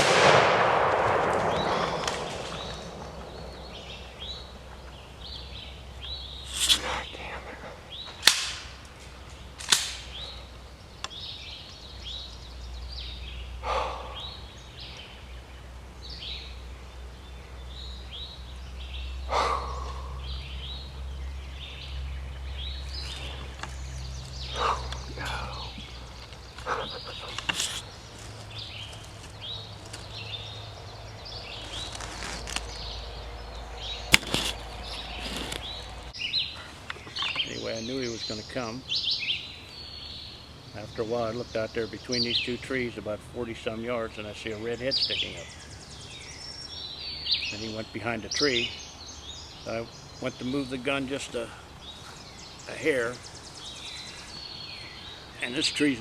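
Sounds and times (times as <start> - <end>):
steady low rumble: 0.0 - 19.4
small birds chirping: 0.0 - 56.0.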